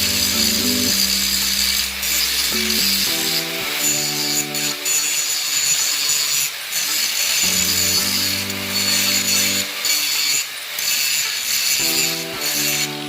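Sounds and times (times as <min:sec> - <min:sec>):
background music with bass notes: 0:00.0 - 0:04.8, 0:07.4 - 0:09.7, 0:11.8 - 0:13.0
power grinder grinding metal: 0:00.0 - 0:13.0.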